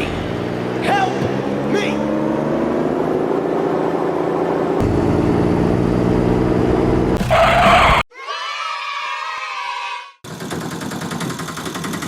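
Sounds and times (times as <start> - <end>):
vehicle engine running: 0.0 - 8.0.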